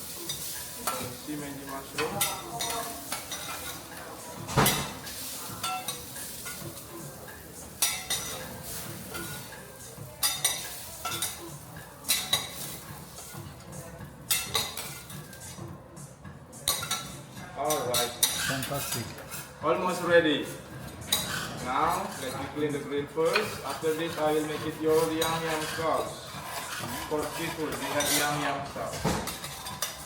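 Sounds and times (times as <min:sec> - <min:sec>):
food sizzling: 0:00.0 - 0:13.6
metal spatulas clanking on griddle: 0:00.1 - 0:13.4, 0:14.3 - 0:15.4, 0:23.3 - 0:30.0.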